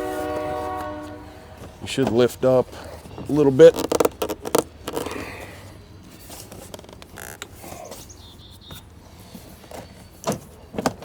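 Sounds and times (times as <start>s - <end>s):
plastic door panel creaking: 3.2s - 5.3s.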